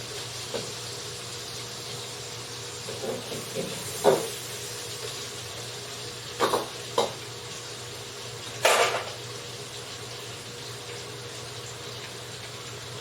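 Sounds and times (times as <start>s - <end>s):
utensils clattering on a pan: 8.6s - 9.2s.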